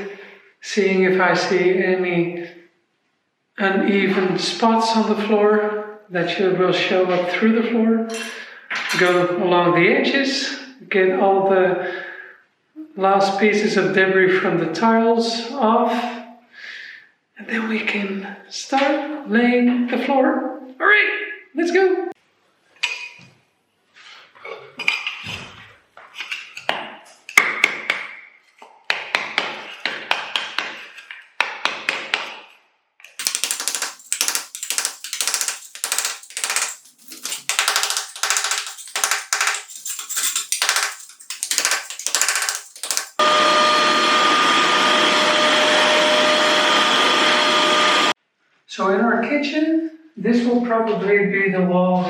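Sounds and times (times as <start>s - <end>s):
hand scraper scraping floor tiles: 28.4s - 32.5s, 33.2s - 43.8s
vacuum cleaner running: 43.2s - 48.1s.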